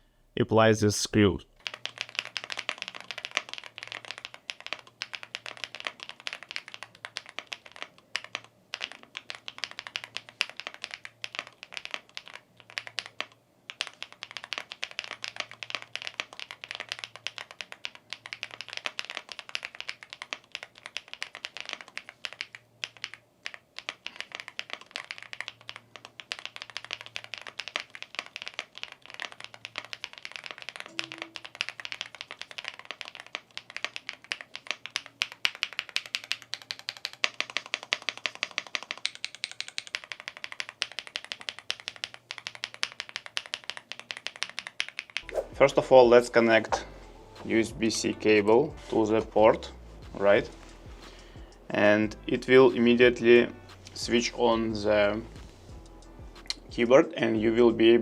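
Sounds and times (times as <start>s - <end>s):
fast typing on mechanical keyboard: 1.6s - 45.2s.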